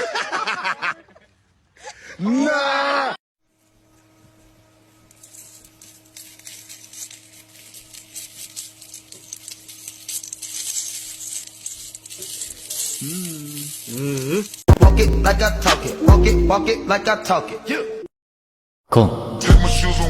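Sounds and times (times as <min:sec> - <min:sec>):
low electrical hum: 0:03.5 - 0:14.6
crackling sizzling hiss: 0:03.6 - 0:16.1.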